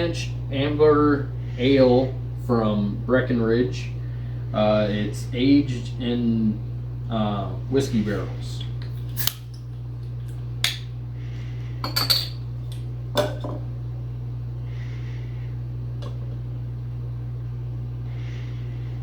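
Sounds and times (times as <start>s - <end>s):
steady low hum: 0.0s - 19.0s
glassware clinking: 11.8s - 12.4s.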